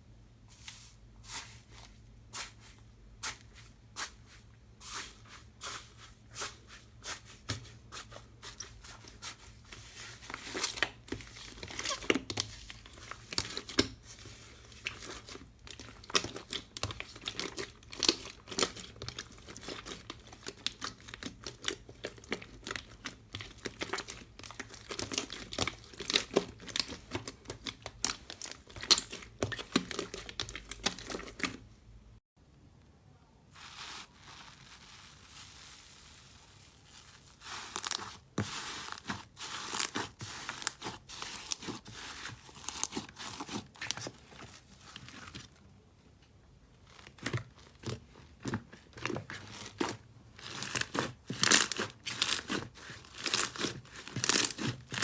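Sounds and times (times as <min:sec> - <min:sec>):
slime popping and crackling: 0:14.7 - 0:31.5, 0:50.5 - 0:55.0.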